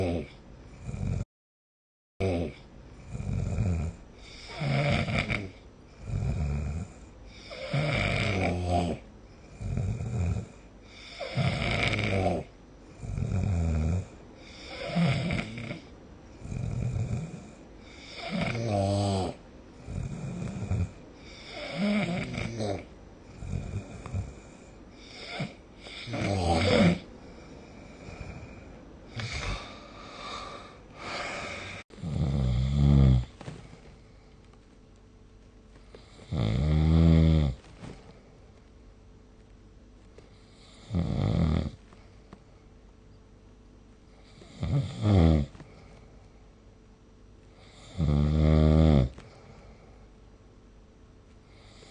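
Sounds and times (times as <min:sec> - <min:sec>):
person snoring: 0:00.0 - 0:01.3, 0:02.2 - 0:33.6, 0:36.0 - 0:38.0, 0:40.5 - 0:41.8, 0:44.2 - 0:45.6, 0:47.6 - 0:49.8.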